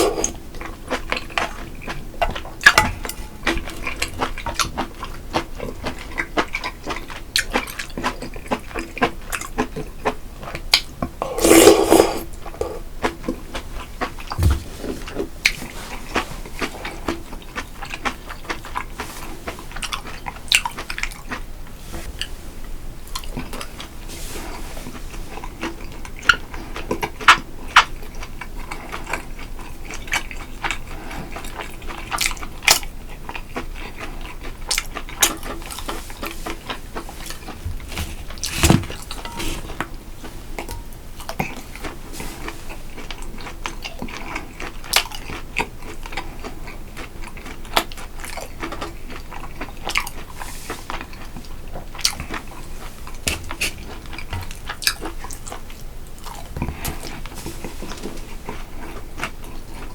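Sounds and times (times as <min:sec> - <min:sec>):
man chewing and biting food: 0:12.4 - 0:21.5, 0:25.3 - 0:59.9.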